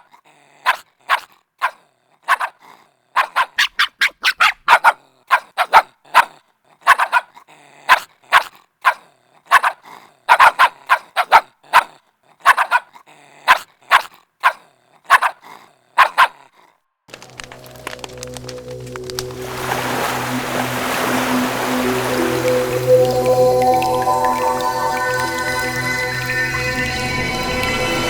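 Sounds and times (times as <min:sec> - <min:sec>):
puppy barking: 0:00.6 - 0:02.6, 0:03.2 - 0:15.4, 0:16.0 - 0:16.5
music: 0:17.1 - 0:28.0.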